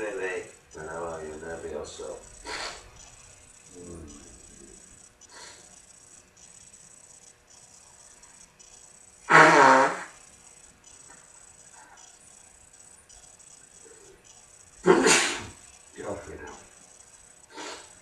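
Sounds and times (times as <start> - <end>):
person sneezing: 14.8 - 15.6.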